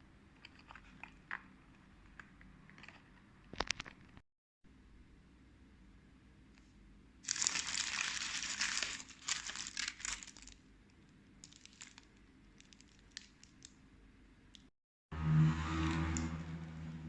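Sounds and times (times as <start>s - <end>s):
paper wrapper crinkling: 7.2s - 10.6s, 11.4s - 13.8s.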